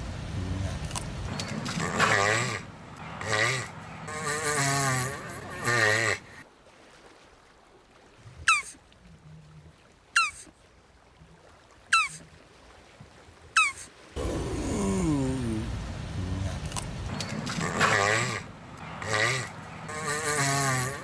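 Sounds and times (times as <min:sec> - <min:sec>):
tortoise wavering bleat-like call: 0:03.2 - 0:06.4, 0:17.5 - 0:21.0.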